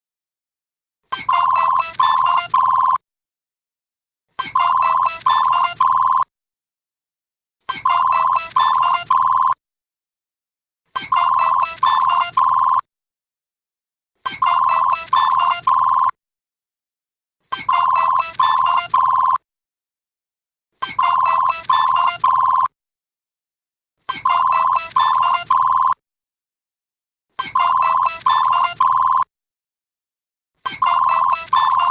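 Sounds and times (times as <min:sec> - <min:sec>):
electronic watch ringtone: 0:01.2 - 0:03.0, 0:04.5 - 0:06.3, 0:07.8 - 0:09.6, 0:11.0 - 0:12.9, 0:14.4 - 0:16.2, 0:17.6 - 0:19.4, 0:20.9 - 0:22.7, 0:24.2 - 0:26.0, 0:27.4 - 0:29.3, 0:30.7 - 0:31.9
electronic beeping jingle: 0:30.8 - 0:31.9.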